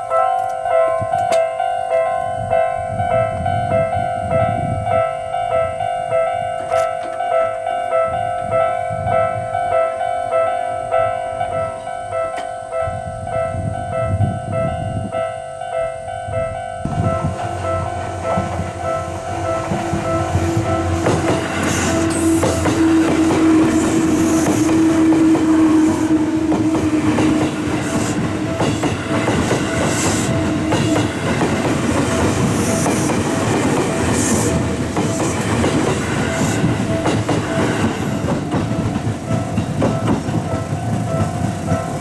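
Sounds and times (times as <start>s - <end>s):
crossing warning alarm: 0.0s - 42.0s
steady train tone: 0.0s - 42.0s
train wheels clicking: 16.9s - 42.0s.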